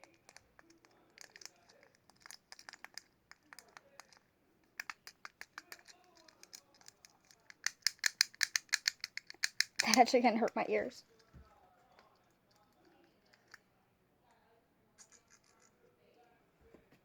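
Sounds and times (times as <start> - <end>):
plastic fidget cube clicking: 0.0 - 11.3, 15.0 - 15.7.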